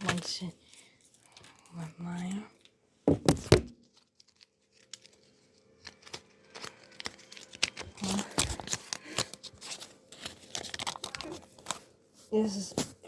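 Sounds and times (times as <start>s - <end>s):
plastic wrapping crinkling and tearing: 3.8s - 12.0s.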